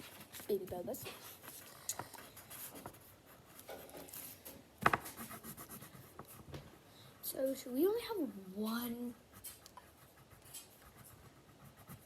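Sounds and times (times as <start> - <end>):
marker scratching on paper: 0.0 - 6.6, 9.0 - 12.0.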